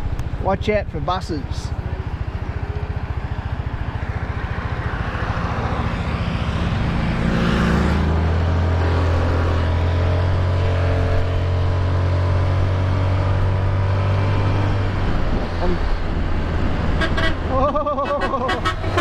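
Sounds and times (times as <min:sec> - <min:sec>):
motorbike engine running: 0:00.0 - 0:05.6
wind and road noise: 0:00.0 - 0:19.0.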